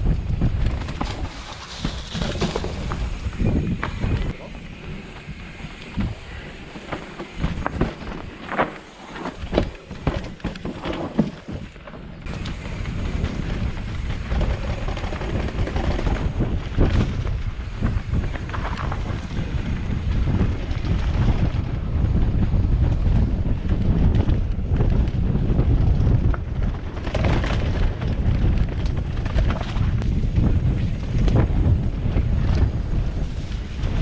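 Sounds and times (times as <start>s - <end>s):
mountain bike on rough trail: 0.0s - 34.0s
wind buffeting microphone: 0.0s - 34.0s
bike clicks and knocks: 0.3s - 21.4s.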